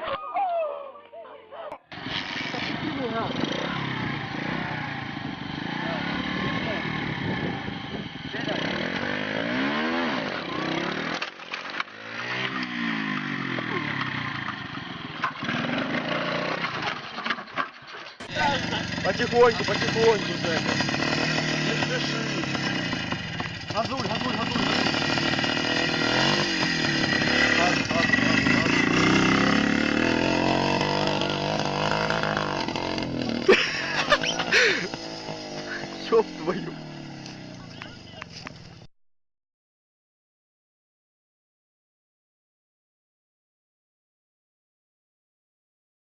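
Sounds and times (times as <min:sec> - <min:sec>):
small motorcycle engine revving: 0:01.9 - 0:17.1, 0:18.2 - 0:38.9.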